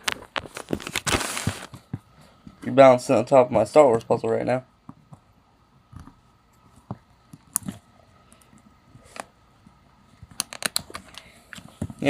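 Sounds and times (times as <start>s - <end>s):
rustles of handling: 0.0s - 2.5s.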